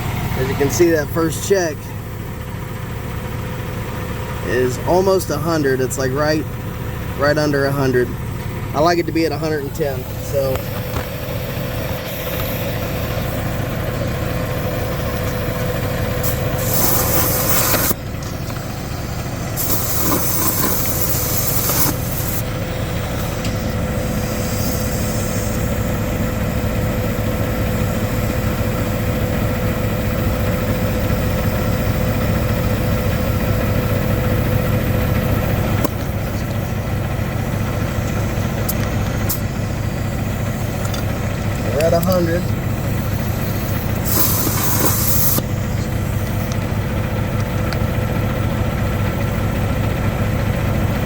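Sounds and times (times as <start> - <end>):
diesel truck engine idling: 0.0 - 51.0
compressed air hissing: 9.8 - 14.1, 14.8 - 46.7.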